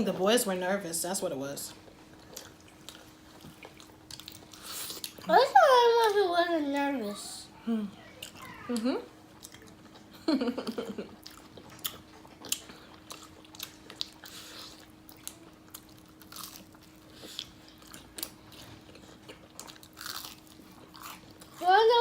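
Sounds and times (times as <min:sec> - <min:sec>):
person chewing crispy chicken: 0:02.1 - 0:05.2, 0:08.2 - 0:10.1, 0:11.1 - 0:21.6.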